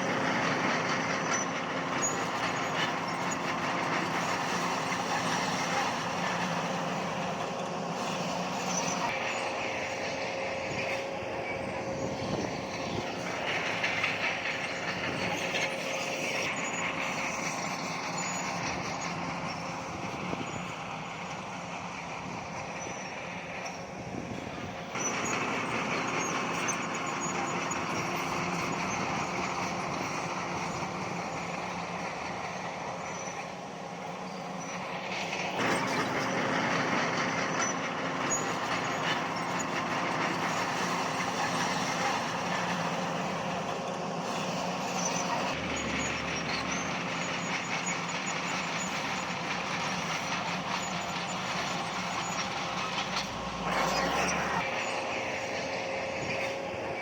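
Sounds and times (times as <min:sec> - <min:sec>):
heavy machinery diesel engines: 0:00.0 - 0:57.0.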